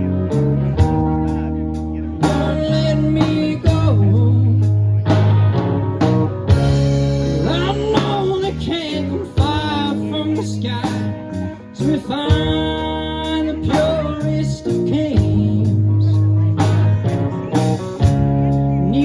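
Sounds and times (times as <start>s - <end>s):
blues guitar: 0.0s - 19.0s
low bass: 0.0s - 19.0s
person singing: 2.2s - 5.2s, 7.2s - 17.9s.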